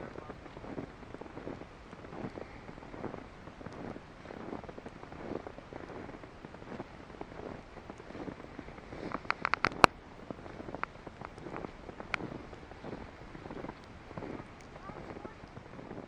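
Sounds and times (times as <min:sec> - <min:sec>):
footsteps crunching through snow: 0:00.0 - 0:16.0
sharp cracks: 0:09.0 - 0:10.0.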